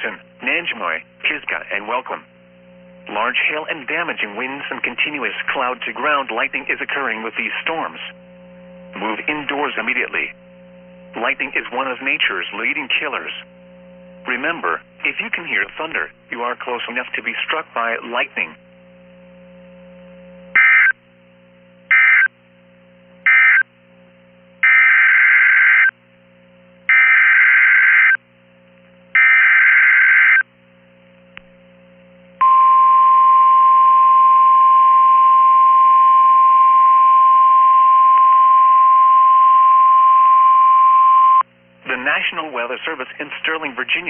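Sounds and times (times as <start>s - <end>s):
steady warning alarm tone: 20.6s - 21.0s, 21.9s - 22.3s, 23.3s - 23.7s, 24.6s - 25.9s, 26.9s - 28.2s, 29.2s - 30.4s
warbling data bursts: 20.6s - 21.0s.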